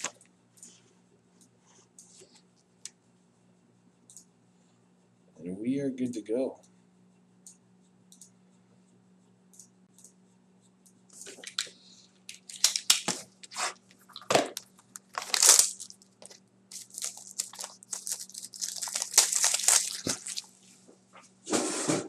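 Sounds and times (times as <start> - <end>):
packaging crinkling and tearing: 12.3 - 20.6.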